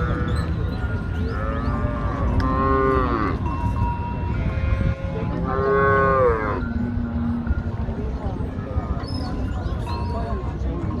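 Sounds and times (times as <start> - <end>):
market background noise: 0.0 - 11.0
cattle mooing: 1.4 - 3.4, 4.4 - 6.7.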